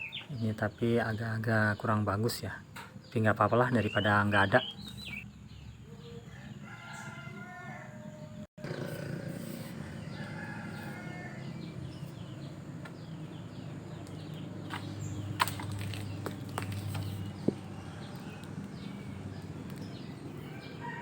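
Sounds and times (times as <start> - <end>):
small birds chirping: 0.0 - 21.0
rooster crowing: 6.2 - 12.0, 20.3 - 21.0.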